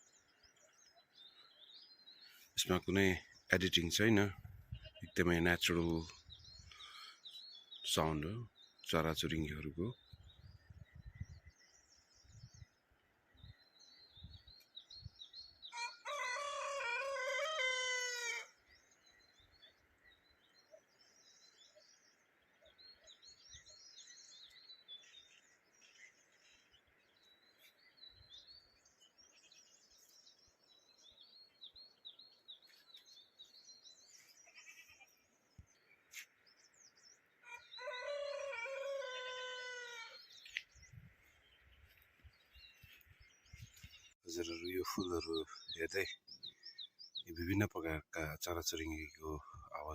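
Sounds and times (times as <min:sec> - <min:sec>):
songbirds chirping: 0:00.0 - 0:49.9
rooster crowing: 0:15.7 - 0:18.5, 0:37.4 - 0:40.2.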